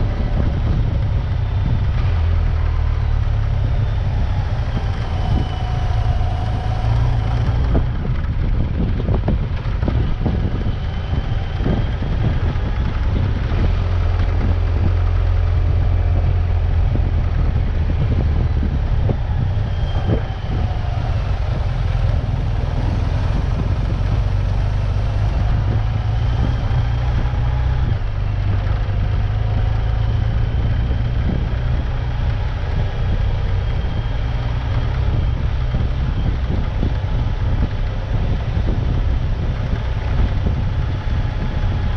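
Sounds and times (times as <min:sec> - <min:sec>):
faint whines: 0:00.0 - 0:31.6
vehicle engine rumble: 0:00.0 - 0:41.9.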